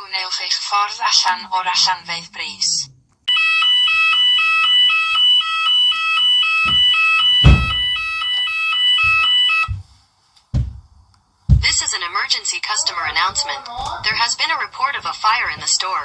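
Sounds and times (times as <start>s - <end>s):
fire alarm two-tone signal: 3.3s - 9.8s
dull low thumps: 6.7s - 8.2s, 9.0s - 9.9s, 10.6s - 11.9s.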